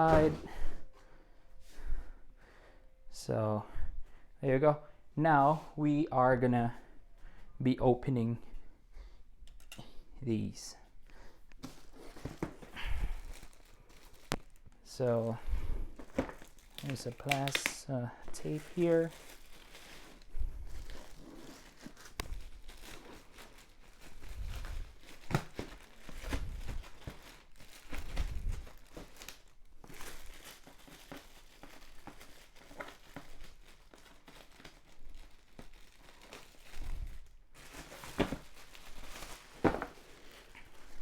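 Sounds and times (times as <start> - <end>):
cardboard crinkling and rustling: 0.0 - 0.6, 11.6 - 41.0
packing tape tearing: 16.0 - 36.8.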